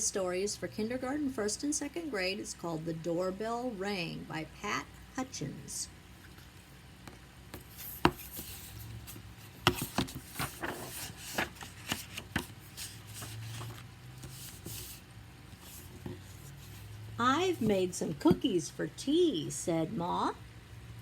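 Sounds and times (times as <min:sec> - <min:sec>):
taps and knocks on a book: 0:07.0 - 0:08.5, 0:09.6 - 0:10.2
paper rustling and sliding: 0:07.6 - 0:17.7.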